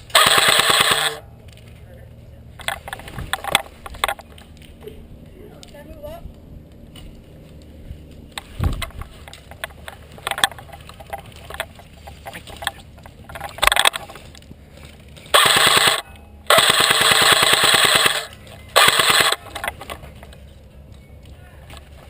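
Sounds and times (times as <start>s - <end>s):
airsoft rifle firing full auto: 0.0s - 1.2s, 15.3s - 19.7s.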